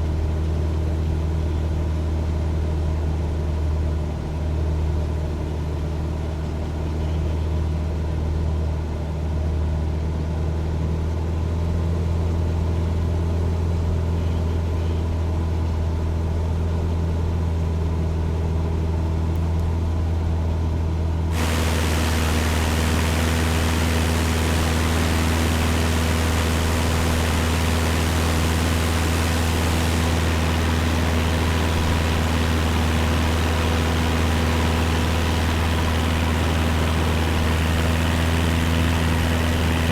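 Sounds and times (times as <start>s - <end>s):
propeller plane engine droning: 21.3s - 39.9s
rush of air noise: 21.4s - 39.9s.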